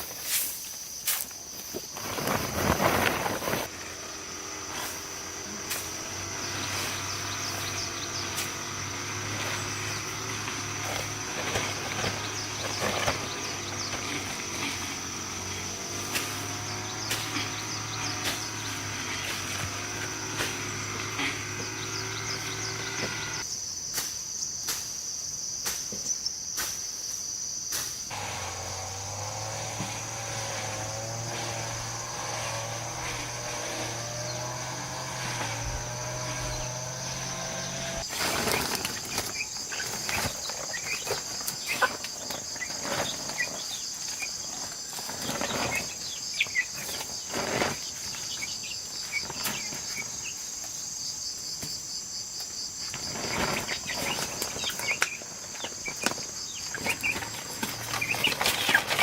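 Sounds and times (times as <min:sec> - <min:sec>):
crickets trilling: 0:00.0 - 0:59.0.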